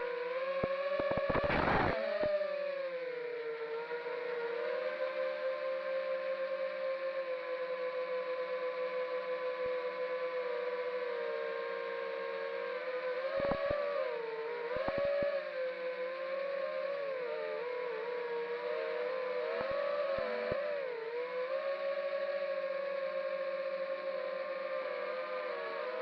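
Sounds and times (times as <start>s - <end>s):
quadcopter motors whining: 0.0s - 2.7s, 11.1s - 26.0s.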